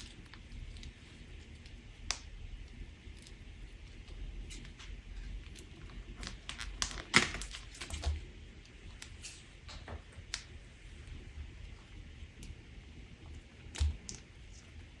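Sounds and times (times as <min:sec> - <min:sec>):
slime crackling and popping: 0:00.0 - 0:09.4.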